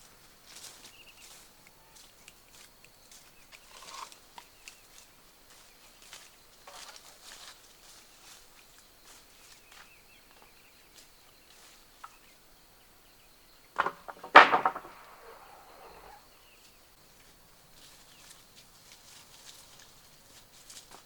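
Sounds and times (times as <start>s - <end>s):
faint scattered ticks: 0.4s - 12.4s
rattling clatter: 13.8s - 16.2s
sharp knocks: 13.8s - 16.2s.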